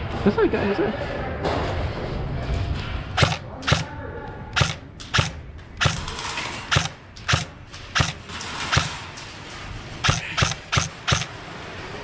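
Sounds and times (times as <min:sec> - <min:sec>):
airsoft rifle shots: 0:03.2 - 0:04.0, 0:04.6 - 0:09.1, 0:10.0 - 0:11.4.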